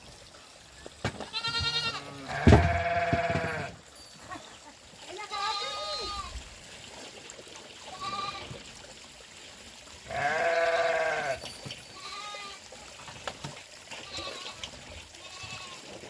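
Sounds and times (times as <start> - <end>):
sheep bleating: 1.3 - 3.7, 10.1 - 11.4.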